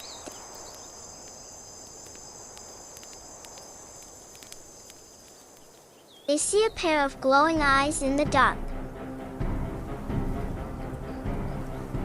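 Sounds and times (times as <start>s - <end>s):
crickets chirring: 0.0s - 8.0s
faint rustling hiss: 0.0s - 12.0s.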